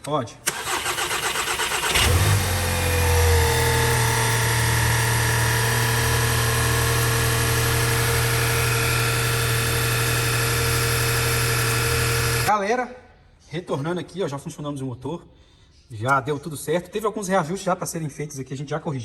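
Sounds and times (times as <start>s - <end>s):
car engine starting and idling: 0.4s - 12.5s.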